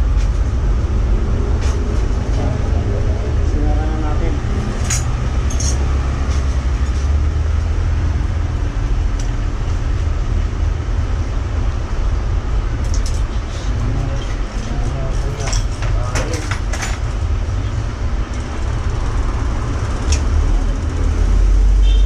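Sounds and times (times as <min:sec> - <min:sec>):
low rumble: 0:00.0 - 0:15.4.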